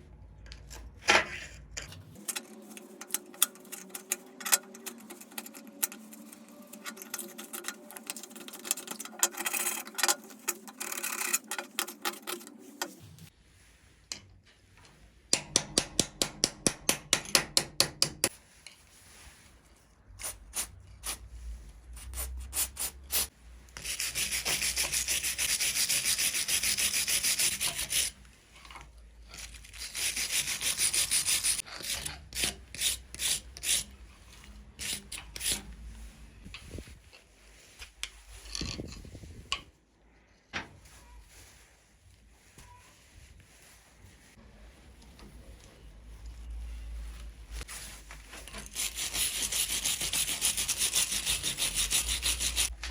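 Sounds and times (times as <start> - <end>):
abrasive scrubbing on steel pliers: 2.2 - 13.0, 22.0 - 36.4, 47.6 - 52.8.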